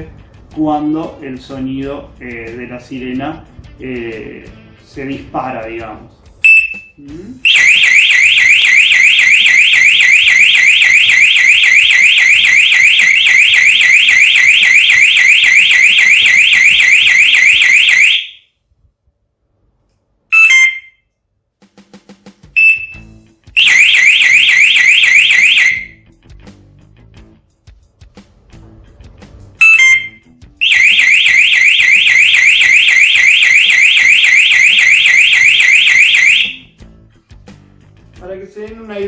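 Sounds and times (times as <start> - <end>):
short beep: 6.4 - 7.0, 20.3 - 21.0, 22.6 - 23.1, 29.6 - 30.3
motorcycle alarm siren sweeping: 6.4 - 18.5, 20.3 - 21.0, 22.6 - 26.0, 29.6 - 36.8.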